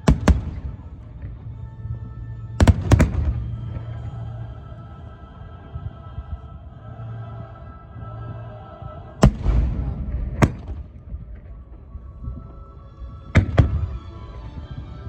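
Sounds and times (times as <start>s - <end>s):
rumbling crackle of fireworks: 0.0s - 4.9s, 9.1s - 15.0s
background music: 0.0s - 15.0s
fireworks bursting: 2.6s - 4.0s, 9.2s - 12.7s, 13.3s - 14.4s.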